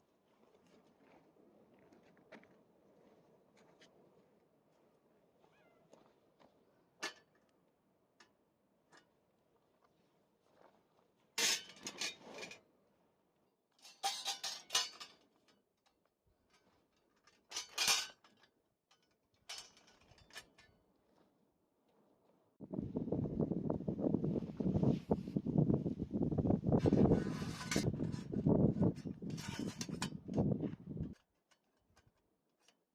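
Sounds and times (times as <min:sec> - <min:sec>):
cookware clinking and scraping: 0:11.4 - 0:12.6, 0:13.8 - 0:15.2, 0:17.5 - 0:18.4, 0:29.3 - 0:30.3.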